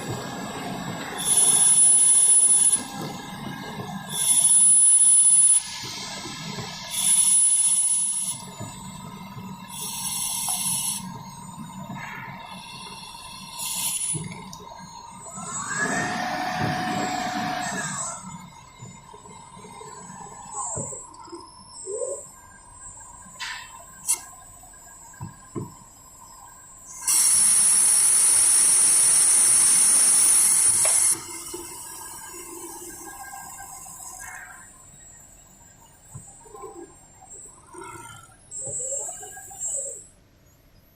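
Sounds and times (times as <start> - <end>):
lathe low hum: 0.0 - 21.6
high-pitched hissing whine: 0.0 - 40.9.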